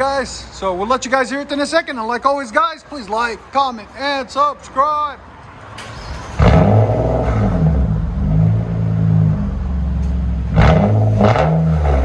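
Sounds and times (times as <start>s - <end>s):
car exhaust revving: 6.0s - 12.0s.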